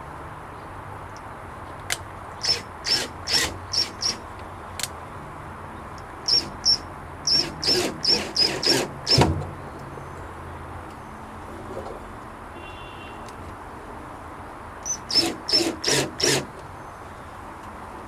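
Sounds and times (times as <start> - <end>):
sharp scraping squeaks: 2.4 - 4.3, 6.3 - 9.3, 14.9 - 16.6.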